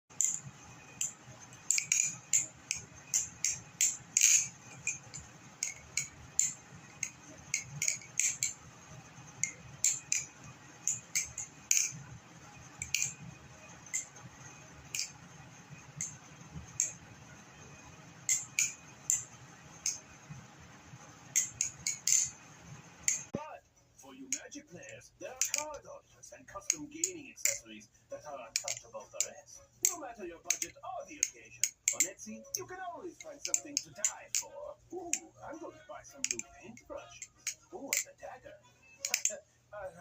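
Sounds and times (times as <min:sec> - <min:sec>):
butterfly knife clacking: 0:00.2 - 0:08.6, 0:09.4 - 0:12.0, 0:12.8 - 0:13.2, 0:14.9 - 0:15.2, 0:18.2 - 0:20.1, 0:21.4 - 0:22.4, 0:28.6 - 0:32.5, 0:33.2 - 0:35.4, 0:36.2 - 0:38.2, 0:39.0 - 0:39.4.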